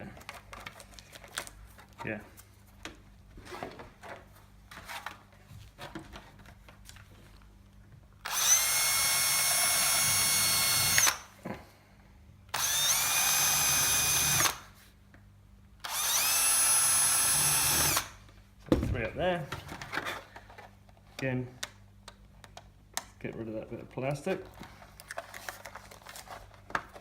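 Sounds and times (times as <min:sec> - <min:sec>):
power drill drilling plastic: 0:08.2 - 0:11.3, 0:12.6 - 0:14.7, 0:15.8 - 0:18.2.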